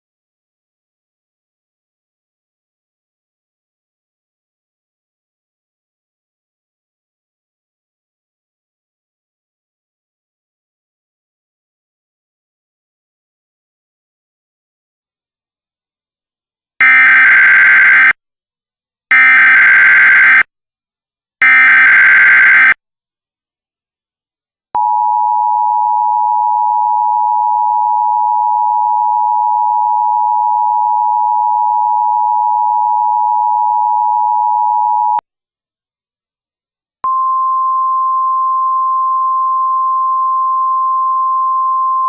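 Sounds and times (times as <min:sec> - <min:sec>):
harsh buzzing data bursts: 0:16.8 - 0:18.1, 0:21.4 - 0:22.8.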